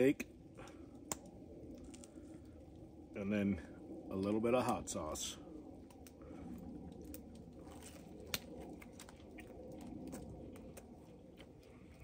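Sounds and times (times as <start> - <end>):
man chewing food: 7.0 - 12.0.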